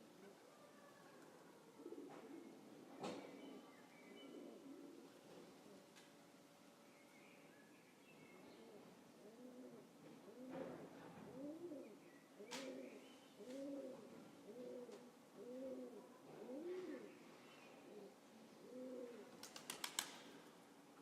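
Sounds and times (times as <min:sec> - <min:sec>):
pigeon cooing: 0:00.0 - 0:02.8, 0:03.5 - 0:05.8, 0:08.4 - 0:17.2, 0:17.8 - 0:20.0.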